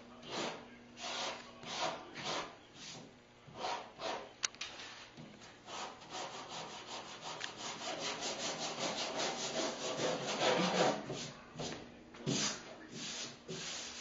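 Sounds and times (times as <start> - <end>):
sandpaper rasping: 5.7 - 11.3, 12.3 - 14.0.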